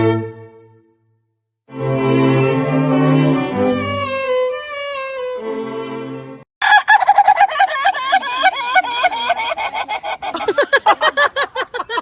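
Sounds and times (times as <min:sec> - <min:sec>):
string music: 0:00.0 - 0:00.9, 0:01.7 - 0:06.5.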